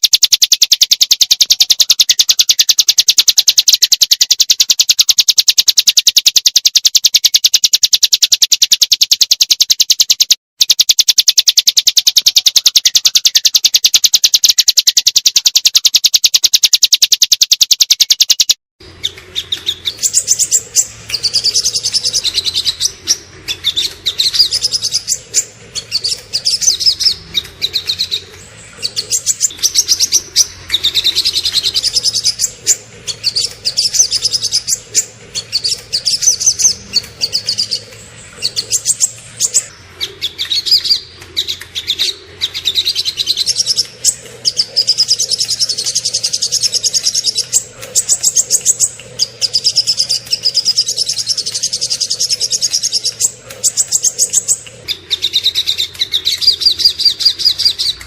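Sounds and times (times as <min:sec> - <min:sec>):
songbirds trilling: 0:00.0 - 0:58.0.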